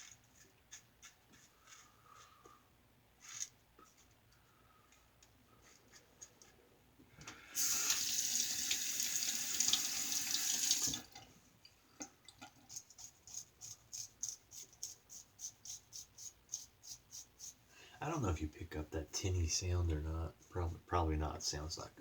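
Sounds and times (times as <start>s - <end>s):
faucet running: 7.6s - 11.2s.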